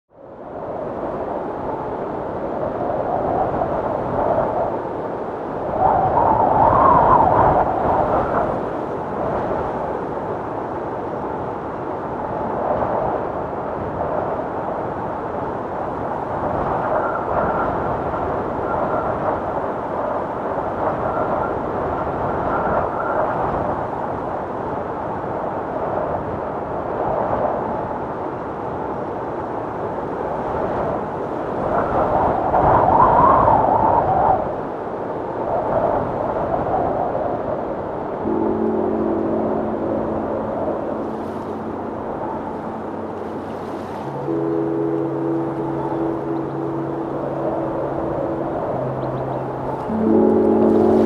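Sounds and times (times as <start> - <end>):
strong wind rushing: 0.2 - 24.2.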